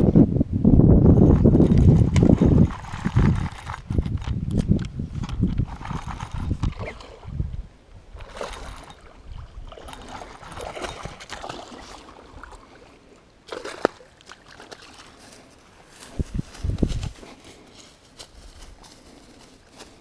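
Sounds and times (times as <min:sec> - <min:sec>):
water splashing and trickling: 0:01.2 - 0:04.4, 0:05.4 - 0:16.9.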